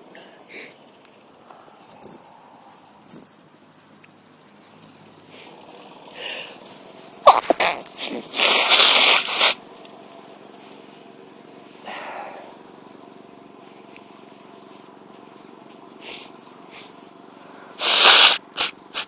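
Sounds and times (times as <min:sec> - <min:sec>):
sharp catches of breath: 0:05.3 - 0:06.6
woman sneezing: 0:07.3 - 0:09.3.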